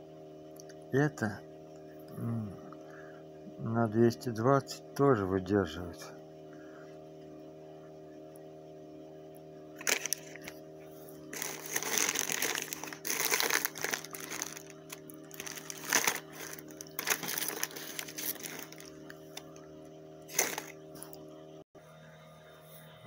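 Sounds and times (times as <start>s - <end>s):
plastic packaging crinkling: 9.8s - 10.6s, 11.3s - 19.5s, 20.3s - 21.1s.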